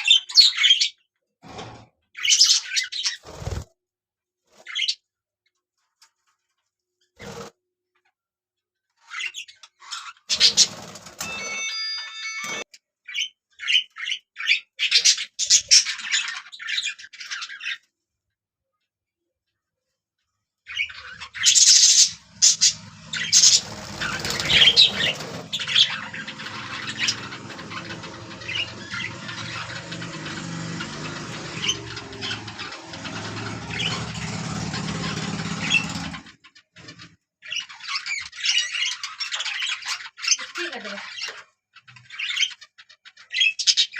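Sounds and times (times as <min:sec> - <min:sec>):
budgerigars chirping and warbling: 0:00.0 - 0:01.0, 0:02.2 - 0:03.6, 0:04.6 - 0:05.0, 0:09.0 - 0:17.9, 0:20.7 - 0:43.9.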